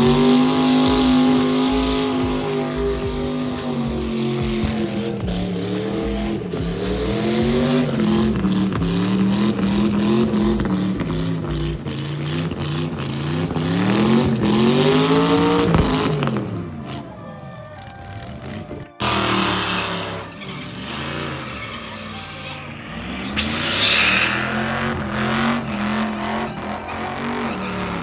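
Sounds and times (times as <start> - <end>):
car engine revving: 0.0 - 28.0.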